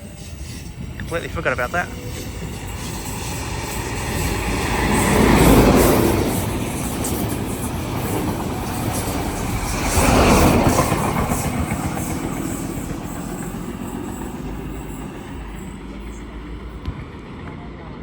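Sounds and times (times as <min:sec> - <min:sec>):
train wheels rumbling on rails: 0:00.0 - 0:18.0.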